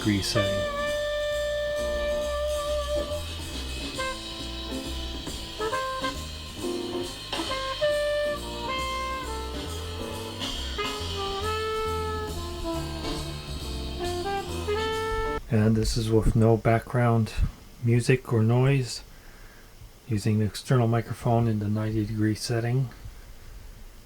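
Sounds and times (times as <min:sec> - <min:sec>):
horn-like melody notes: 0:00.0 - 0:15.4
steady bass line: 0:00.0 - 0:15.5.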